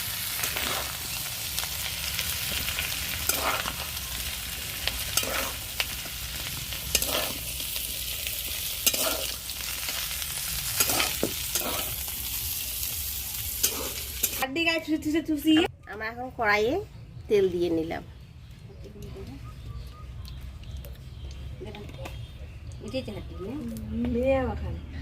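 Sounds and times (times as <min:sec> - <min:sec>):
food sizzling in hot oil: 0:00.0 - 0:14.4
spatula scraping pan: 0:03.2 - 0:03.9, 0:05.0 - 0:05.8, 0:06.8 - 0:07.9, 0:08.8 - 0:09.4, 0:10.7 - 0:12.0.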